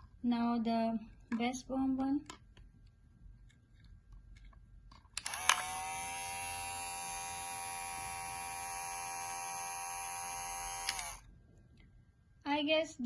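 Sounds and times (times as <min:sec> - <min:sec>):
hair clipper switch click: 0:05.2 - 0:11.2
hair clipper buzzing hum: 0:05.2 - 0:11.3.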